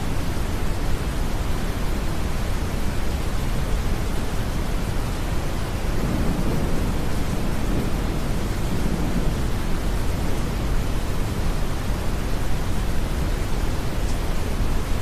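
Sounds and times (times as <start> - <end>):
rain hiss: 0.0 - 15.0
deep brown noise: 5.4 - 12.9
distant thunder rolling: 5.6 - 12.4.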